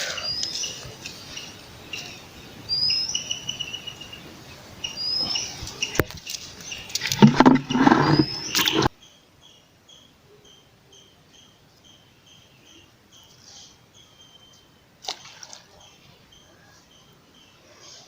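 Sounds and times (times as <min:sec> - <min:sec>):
insect chirping: 0:00.0 - 0:13.3
rustling noise: 0:05.7 - 0:08.9.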